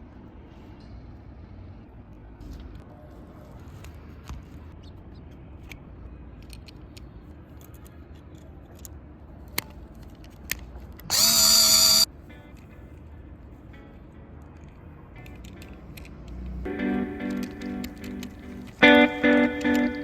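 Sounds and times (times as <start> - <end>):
sharp clicks: 10.5 - 12.1, 17.2 - 20.0
electric drill spinning up: 11.1 - 12.1.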